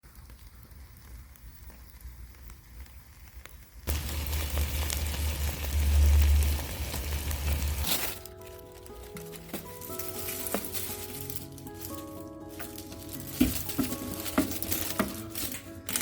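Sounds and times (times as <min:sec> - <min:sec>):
wood fire crackling: 0:00.0 - 0:16.0
low rumble: 0:03.9 - 0:07.9
light background music: 0:03.9 - 0:16.0.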